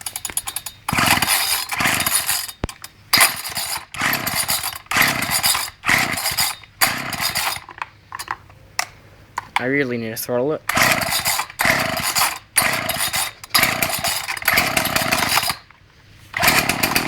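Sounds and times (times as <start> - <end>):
engine turning over: 0.0 - 7.8, 10.7 - 15.7, 16.3 - 17.0
recoil starter pulls: 0.0 - 8.9, 10.6 - 17.0.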